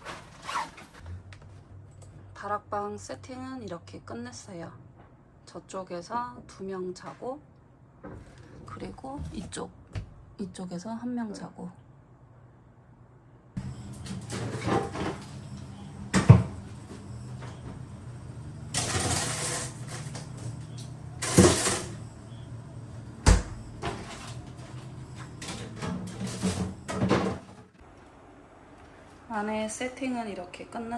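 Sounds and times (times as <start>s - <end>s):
steady low hum: 11.8s - 30.9s.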